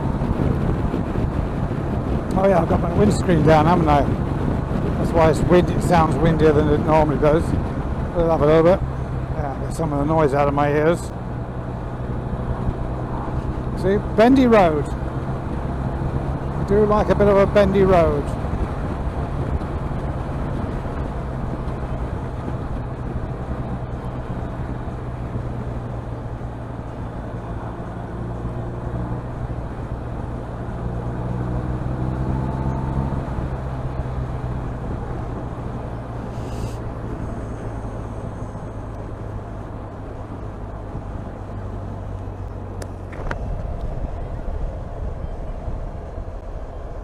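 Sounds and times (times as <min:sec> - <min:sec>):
road noise: 0:00.0 - 0:47.0
wind noise: 0:00.0 - 0:47.0.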